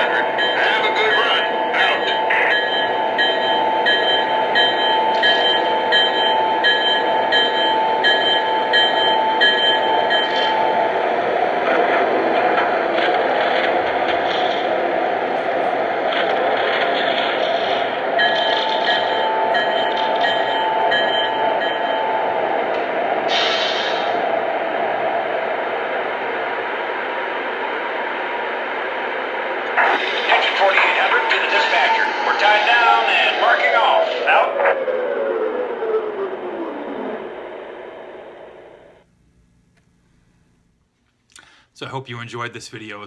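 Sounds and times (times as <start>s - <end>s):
bell ringing: 0.0s - 10.7s, 18.2s - 22.4s
electric locomotive running sounds: 0.0s - 39.1s.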